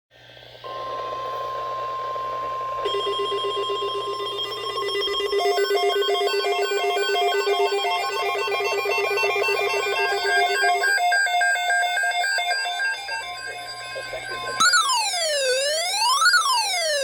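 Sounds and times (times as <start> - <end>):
radio hiss and hum: 0.1 - 3.2, 9.5 - 16.7
warbling electronic alarm: 0.6 - 17.0.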